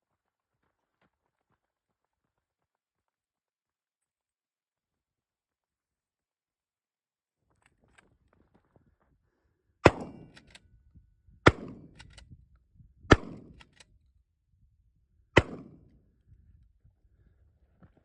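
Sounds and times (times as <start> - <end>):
shotgun shots: 9.8 - 10.5, 11.4 - 12.1, 13.1 - 13.8, 15.4 - 15.9
shotgun action clicks: 10.0 - 10.6, 11.5 - 12.3, 13.1 - 14.0.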